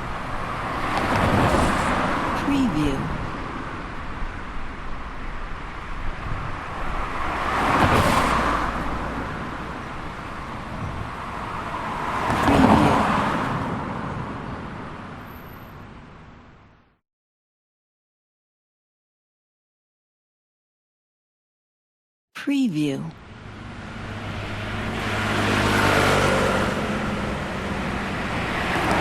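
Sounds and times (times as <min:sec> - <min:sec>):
loud vehicle pass-bys: 0:00.0 - 0:15.4, 0:23.2 - 0:29.0
traffic rushing past: 0:00.0 - 0:16.8, 0:23.2 - 0:29.0.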